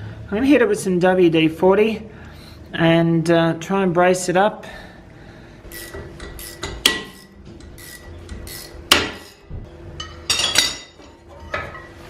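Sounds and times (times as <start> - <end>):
hand tools clanking on metal: 10.0 - 12.0.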